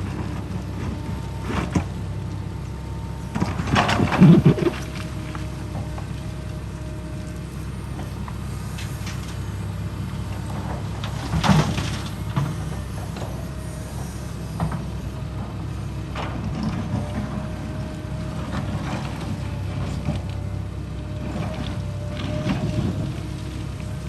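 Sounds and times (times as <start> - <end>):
construction machinery engine running: 0.0 - 24.0.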